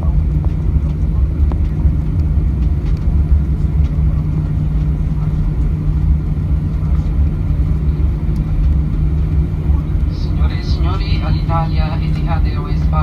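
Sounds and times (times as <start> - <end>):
airliner cabin rumble: 0.0 - 13.0
constant low hum: 0.0 - 13.0.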